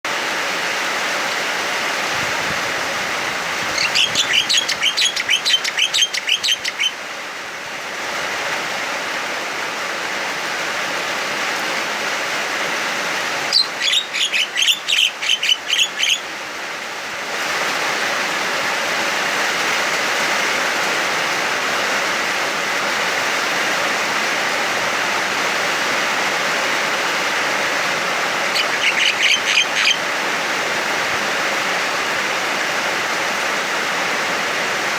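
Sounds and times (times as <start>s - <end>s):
heavy rain hiss: 0.1s - 34.9s
myna calling: 3.6s - 7.0s, 13.5s - 16.3s, 28.3s - 30.2s.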